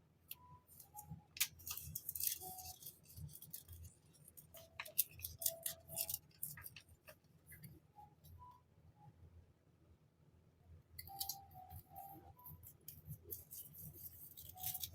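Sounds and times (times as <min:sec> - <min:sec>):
packaging crinkling and rustling: 0:00.8 - 0:07.2.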